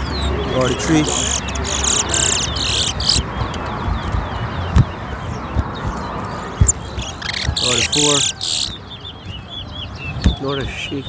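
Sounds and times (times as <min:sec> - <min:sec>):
short thumps: 0:00.0 - 0:08.8
faint bird chirps: 0:00.0 - 0:11.0
finch singing buzzy song: 0:00.0 - 0:11.0.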